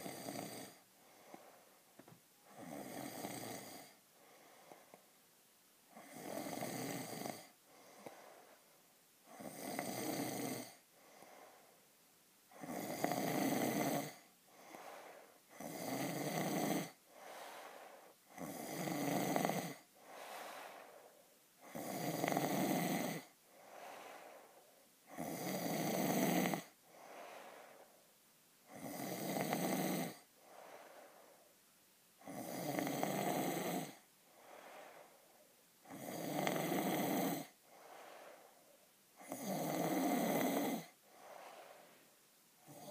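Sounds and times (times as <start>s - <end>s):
man snoring: 0.0s - 0.8s, 2.5s - 4.0s, 5.9s - 7.6s, 9.3s - 10.8s, 12.5s - 20.9s, 21.6s - 24.3s, 25.1s - 26.8s, 28.7s - 30.3s, 32.2s - 34.0s, 35.8s - 37.6s, 39.2s - 41.0s, 42.6s - 42.9s.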